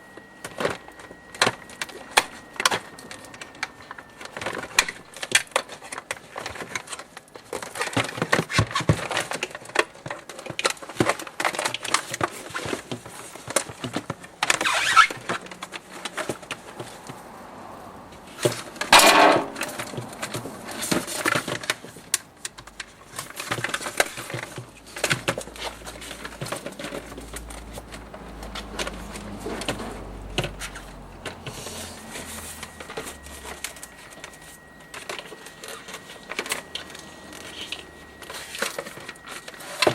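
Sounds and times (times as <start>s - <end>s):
objects clicking and rattling: 0.0s - 39.9s
scraping bursts: 11.7s - 39.9s.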